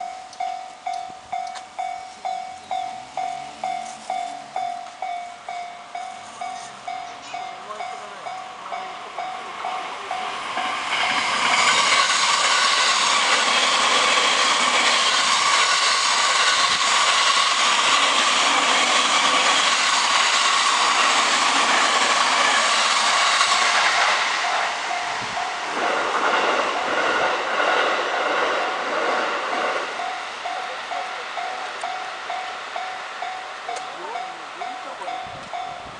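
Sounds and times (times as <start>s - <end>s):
level crossing bell ringing: 0.0s - 11.3s, 30.0s - 35.9s
train wheels clickety-clack: 9.2s - 32.5s.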